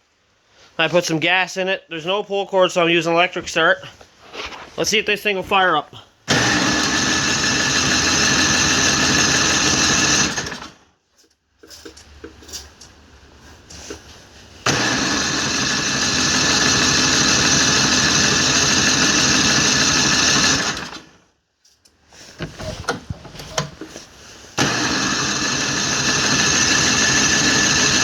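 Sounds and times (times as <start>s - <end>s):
electric starter cranking engine: 6.3s - 10.8s, 14.6s - 21.2s, 24.5s - 28.0s.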